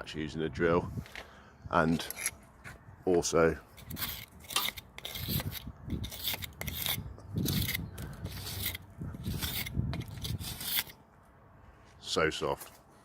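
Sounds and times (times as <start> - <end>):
drill scraping and grinding mortar: 3.7 - 11.0.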